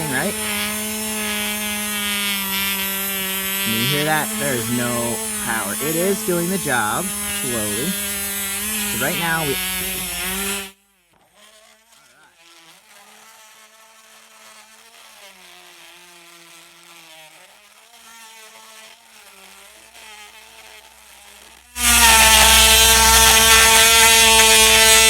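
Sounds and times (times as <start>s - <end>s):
rotary tool drilling into plastic: 21.8s - 25.0s.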